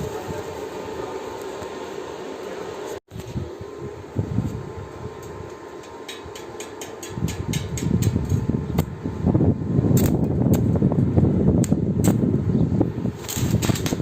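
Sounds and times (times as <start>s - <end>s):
welding arc crackling: 0.0s - 3.4s, 9.9s - 12.3s, 12.9s - 14.0s.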